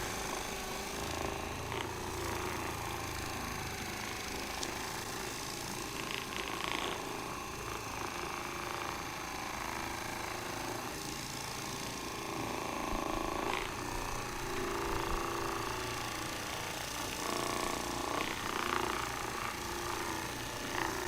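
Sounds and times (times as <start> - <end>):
massage gun pulsing: 0.0 - 21.0.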